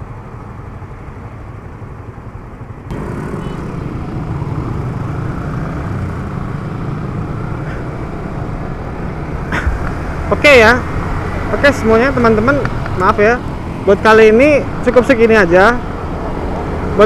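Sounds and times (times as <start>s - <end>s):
motorcycle engine rumble: 0.1s - 14.9s.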